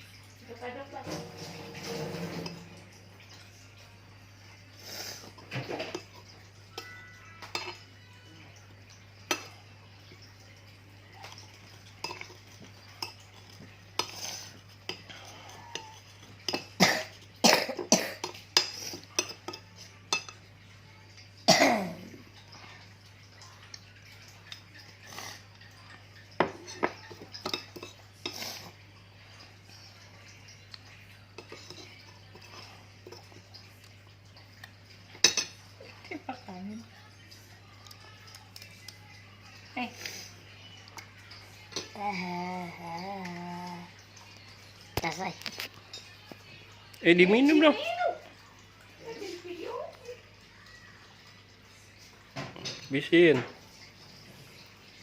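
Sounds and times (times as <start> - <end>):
spoon clinking in a cup: 5.8 - 8.1, 18.2 - 20.5, 26.2 - 28.4, 29.8 - 33.6, 35.1 - 36.0.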